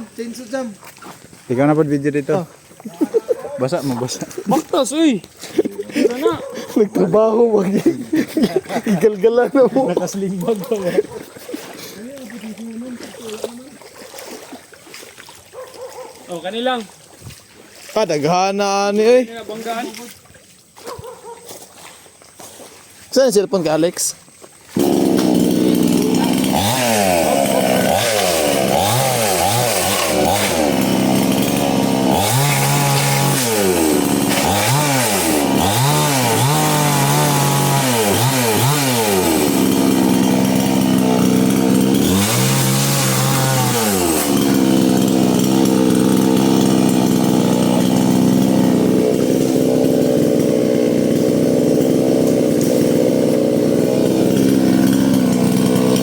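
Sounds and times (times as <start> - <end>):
motor engine revving: 24.7 - 56.0.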